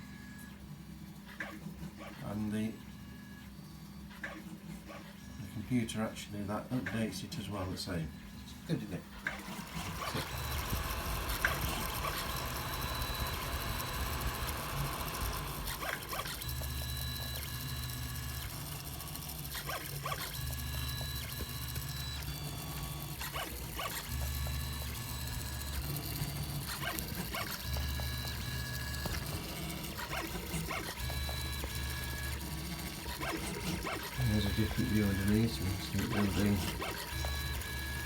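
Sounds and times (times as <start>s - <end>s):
stepper motors humming and whining: 8.4s - 38.0s.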